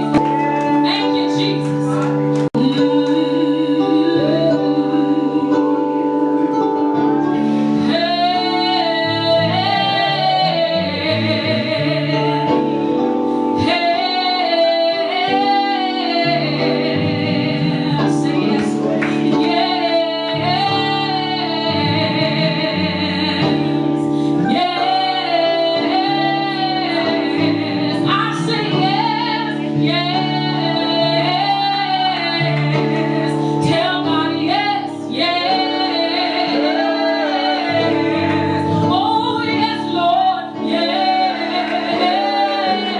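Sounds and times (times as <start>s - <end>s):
woman singing gospel: 0.0s - 12.7s, 13.6s - 42.9s.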